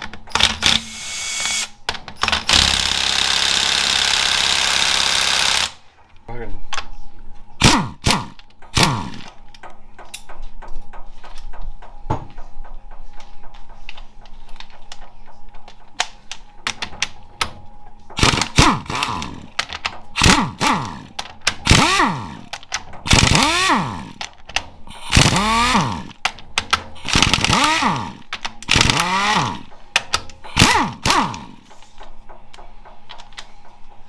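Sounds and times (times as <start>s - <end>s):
power tool bursts: 2.5s - 5.8s, 21.7s - 22.4s, 23.1s - 24.2s, 25.0s - 26.2s, 27.0s - 29.7s, 30.6s - 31.6s
ratchet clicking: 20.2s - 22.5s, 23.1s - 24.3s, 25.1s - 26.2s, 27.0s - 29.7s, 30.6s - 31.6s.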